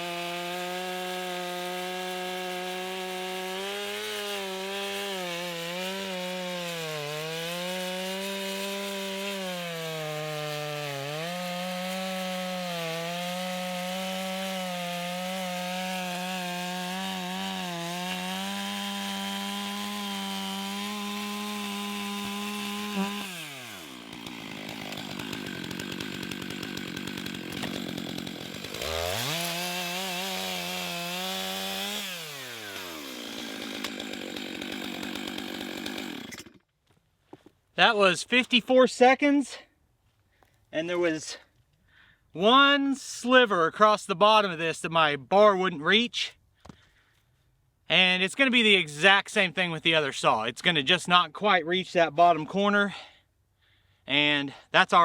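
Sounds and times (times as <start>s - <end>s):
chainsaw cutting log: 0.0s - 36.7s.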